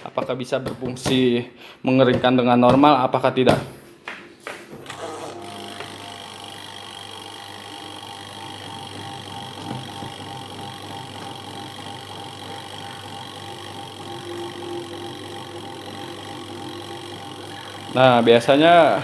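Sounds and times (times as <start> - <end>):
spin-dryer motor humming: 4.4 - 19.0.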